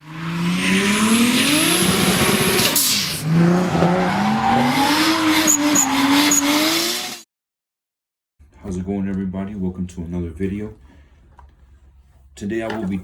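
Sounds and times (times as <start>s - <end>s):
engine revving: 0.0s - 7.2s.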